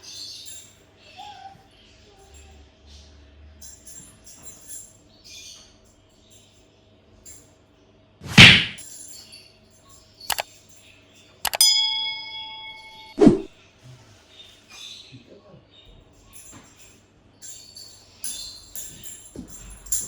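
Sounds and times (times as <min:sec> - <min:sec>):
heavy thud: 0:08.3 - 0:08.8
object ringing like a bell: 0:11.5 - 0:13.4
sharp click: 0:11.5 - 0:13.5.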